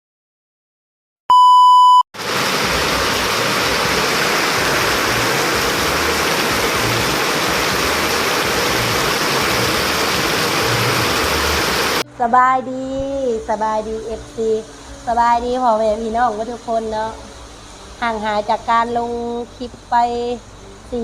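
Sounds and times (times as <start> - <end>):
loud pure beep: 1.3 - 2.1
heavy rain: 2.2 - 12.0.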